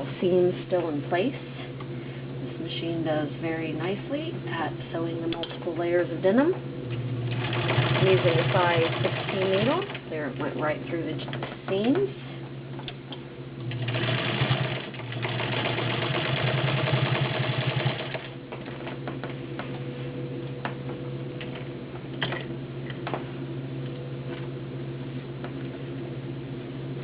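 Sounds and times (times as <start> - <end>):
low hum: 0.0 - 7.5, 18.2 - 27.0
sewing machine stitching: 7.4 - 10.0, 13.7 - 18.3.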